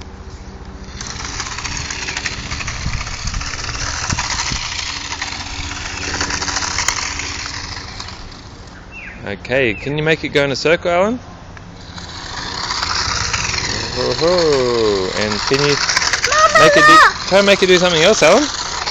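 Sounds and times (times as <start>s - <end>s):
steady low hum: 0.0s - 18.9s
toy car electric motor whirring: 0.7s - 8.8s, 11.7s - 18.9s
plastic wheels rattling on concrete: 0.8s - 8.8s, 11.8s - 18.9s.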